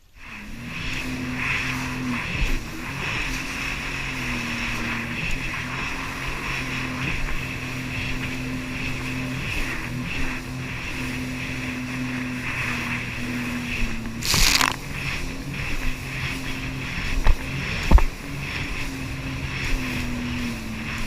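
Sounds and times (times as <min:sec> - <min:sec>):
wind and water hiss: 0:00.0 - 0:21.0
jet ski engine running: 0:00.1 - 0:21.0
loud rush of noise: 0:14.1 - 0:14.9.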